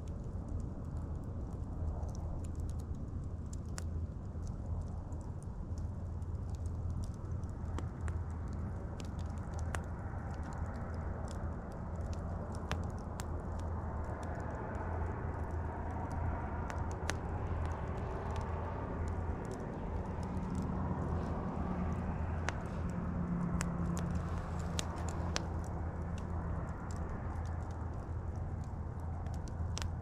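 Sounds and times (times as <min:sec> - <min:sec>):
campfire pops and crackles: 0:00.0 - 0:30.0
fire low rumble: 0:00.0 - 0:30.0.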